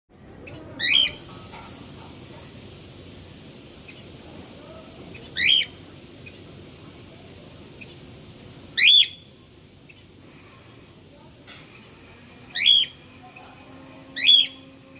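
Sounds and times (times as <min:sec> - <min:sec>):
faint bird chirp: 0:08.8 - 0:10.2, 0:11.7 - 0:14.9.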